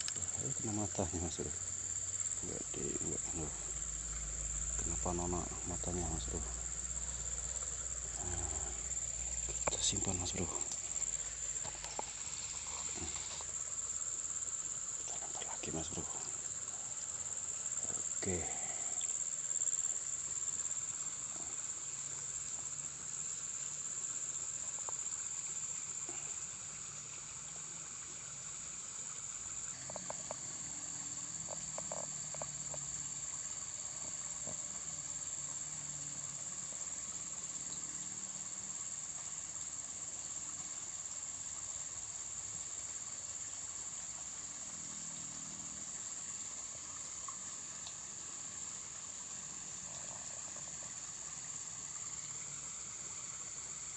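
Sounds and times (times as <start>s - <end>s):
faint clicks: 0.0s - 0.3s
high-pitched insect drone: 0.0s - 27.1s, 29.2s - 53.9s.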